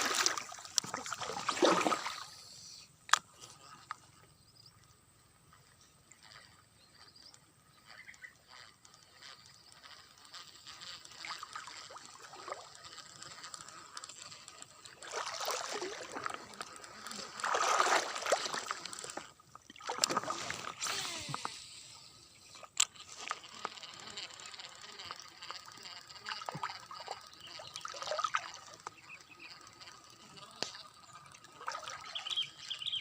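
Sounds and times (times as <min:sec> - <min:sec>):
water splashing and sloshing: 0:00.0 - 0:02.4, 0:11.0 - 0:21.4, 0:26.4 - 0:29.0, 0:30.6 - 0:32.3.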